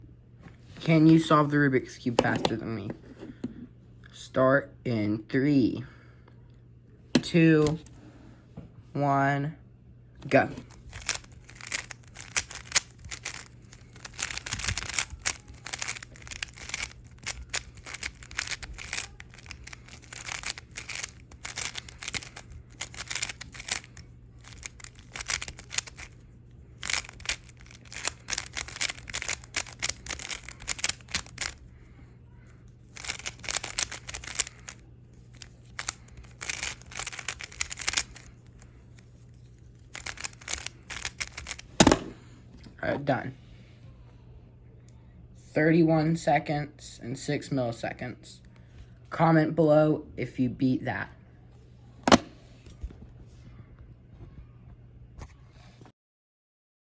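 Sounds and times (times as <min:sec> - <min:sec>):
puzzle cube clicking: 0:10.6 - 0:26.2, 0:26.8 - 0:31.6, 0:32.9 - 0:38.3, 0:39.9 - 0:42.1.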